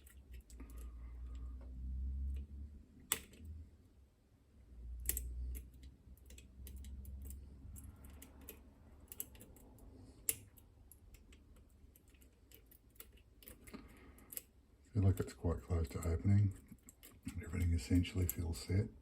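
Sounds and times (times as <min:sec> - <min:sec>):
lock picks clicking in a lock: 0:05.0 - 0:14.5.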